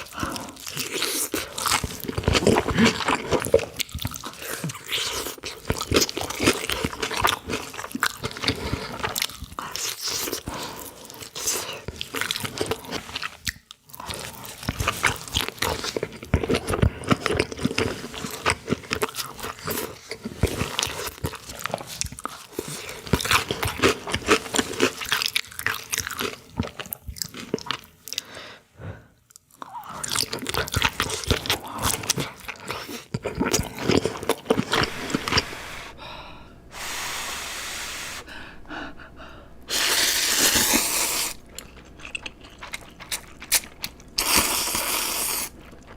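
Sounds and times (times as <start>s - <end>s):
crunchy biting and chewing: 0.0s - 27.9s, 29.6s - 36.0s, 39.7s - 45.9s
steady hissing noise: 34.6s - 45.9s.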